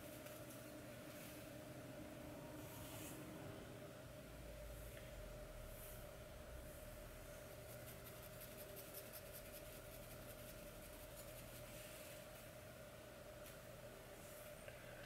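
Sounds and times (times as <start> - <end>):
low electrical hum: 0.0 - 15.0
scratchy strokes on wig hair: 2.6 - 3.4, 7.4 - 12.6.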